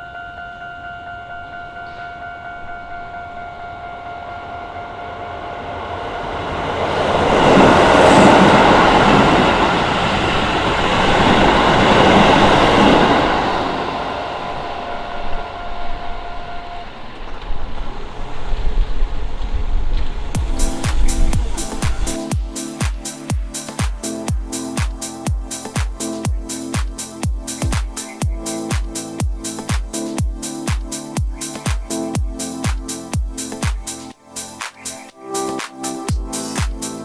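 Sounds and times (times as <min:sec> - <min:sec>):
crossing warning bell ringing: 0:00.0 - 0:17.4
electric train passing: 0:00.0 - 0:37.0.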